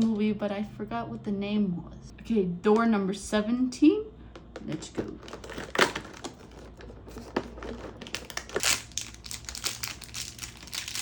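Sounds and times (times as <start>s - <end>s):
cardboard crinkling and rustling: 5.1s - 11.0s.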